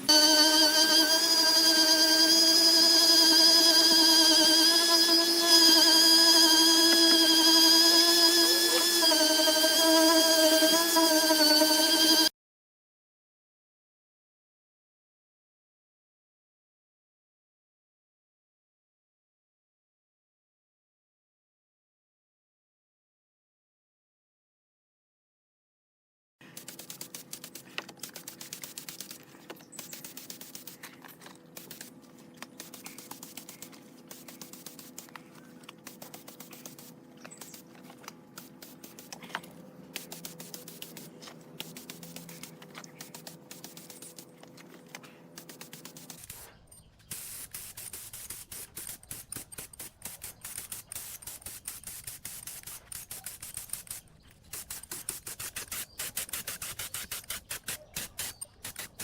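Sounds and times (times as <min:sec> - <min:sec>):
rapid clicking and scraping: 0:26.5 - 0:59.0.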